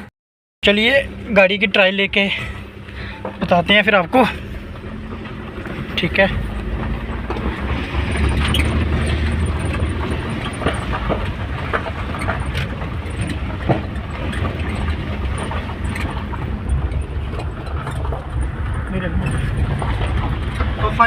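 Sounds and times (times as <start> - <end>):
diesel engine rumble: 0.0 - 21.0
road noise: 0.0 - 21.0
small knocks and rattles: 4.8 - 21.0.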